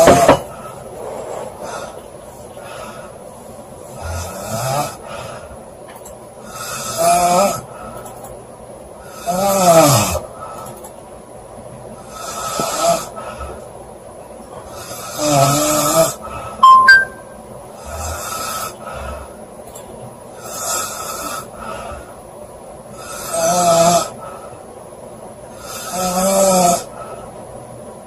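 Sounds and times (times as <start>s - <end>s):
woman snoring loudly: 3.9s - 5.0s, 6.5s - 7.7s, 9.1s - 10.2s, 12.1s - 13.2s, 14.7s - 16.2s, 23.0s - 24.2s, 25.6s - 26.9s
short loud high tones: 16.6s - 17.4s.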